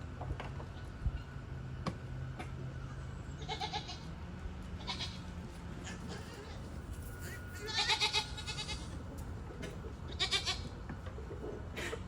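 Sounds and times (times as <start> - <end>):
goat bleating: 3.4 - 4.1, 4.8 - 9.0, 10.1 - 10.7.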